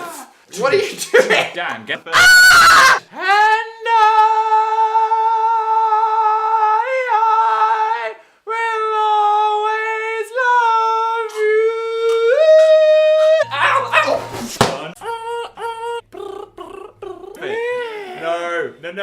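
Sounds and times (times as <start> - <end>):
person singing high held notes: 13.0 - 17.6.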